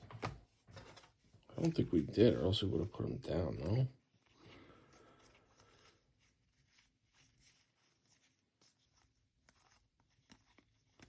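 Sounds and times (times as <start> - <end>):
trading cards flipped by hand: 0.0 - 1.8.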